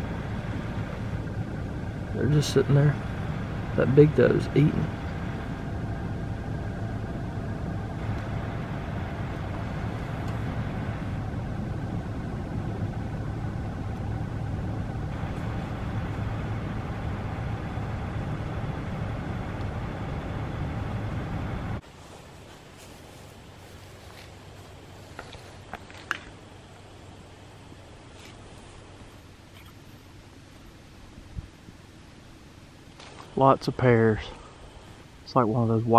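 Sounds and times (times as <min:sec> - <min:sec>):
vehicle engine running: 0:00.0 - 0:21.8.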